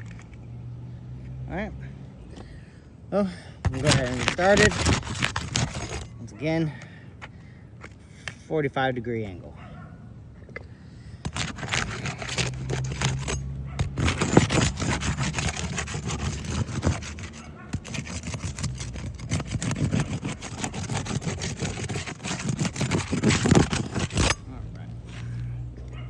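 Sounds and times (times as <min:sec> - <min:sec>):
tool scraping under shingles: 0:03.6 - 0:08.5, 0:11.0 - 0:26.0.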